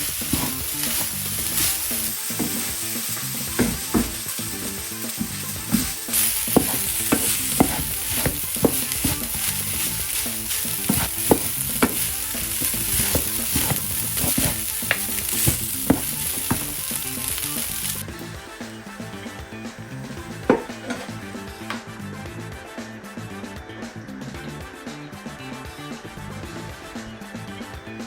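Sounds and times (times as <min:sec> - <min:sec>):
utensil tapping a pan: 0:00.0 - 0:18.2, 0:20.4 - 0:21.8
food sizzling in oil: 0:00.0 - 0:18.3.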